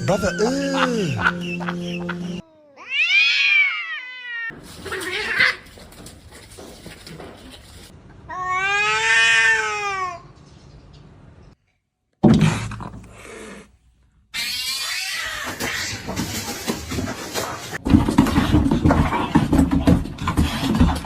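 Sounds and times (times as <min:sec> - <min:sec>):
cats yowling: 0:02.4 - 0:05.6, 0:08.3 - 0:10.2, 0:14.4 - 0:16.1
cats fighting noisily: 0:02.4 - 0:10.2, 0:12.5 - 0:21.0.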